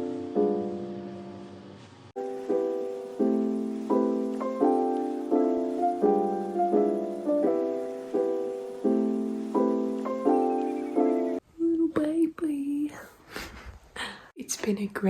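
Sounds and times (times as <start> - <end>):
soft piano chords: 0.0 - 11.4.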